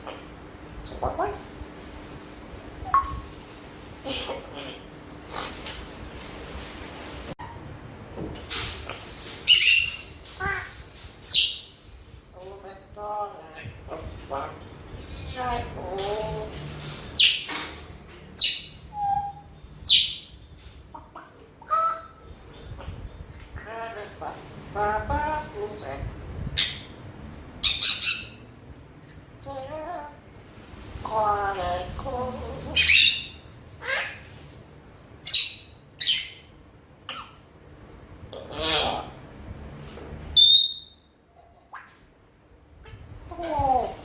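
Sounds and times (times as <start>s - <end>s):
soft parrot calls: 20.9s - 22.9s, 32.8s - 34.4s, 35.2s - 37.4s
parrot whistling: 40.4s - 41.0s.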